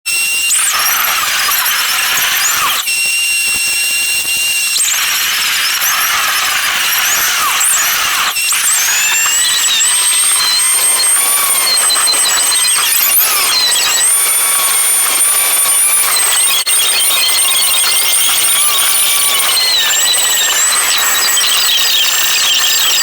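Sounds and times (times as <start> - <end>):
sped-up high-pitched squealing tones: 0.1 - 23.0.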